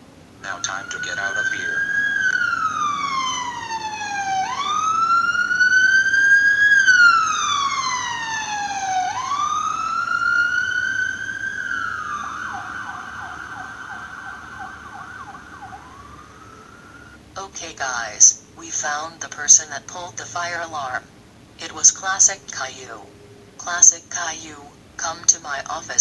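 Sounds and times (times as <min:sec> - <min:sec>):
electronic fire alarm siren: 0:00.3 - 0:17.3.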